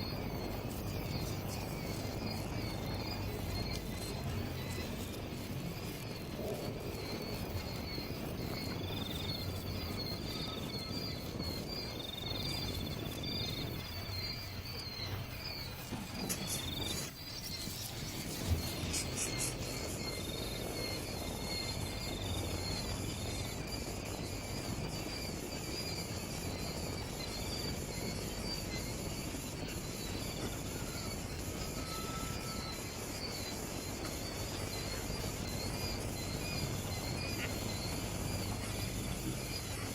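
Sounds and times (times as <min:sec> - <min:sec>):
whistled bird notes: 0:00.0 - 0:23.6
cricket-like insect trill: 0:00.0 - 0:39.9.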